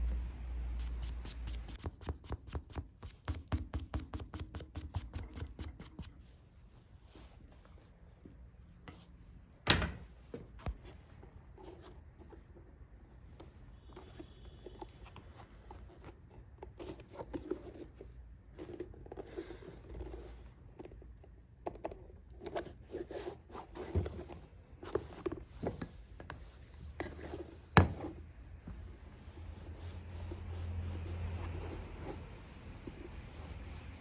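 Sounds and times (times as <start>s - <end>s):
scraping and rubbing leather boot: 22.4s - 34.0s.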